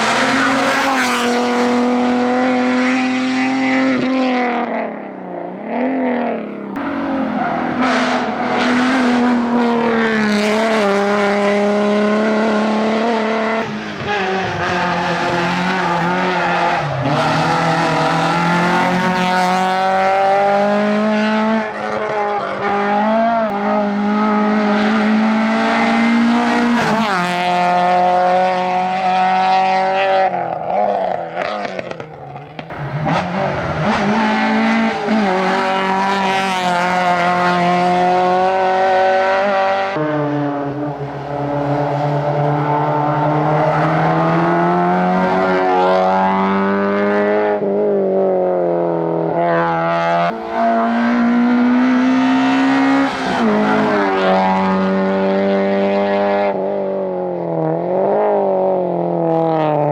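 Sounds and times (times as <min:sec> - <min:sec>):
rally car engine revving: 0:00.0 - 0:59.9.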